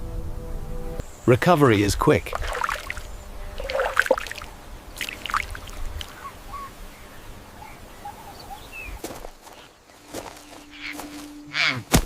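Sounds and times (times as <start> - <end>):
faint bird chirps: 6.0 - 11.8.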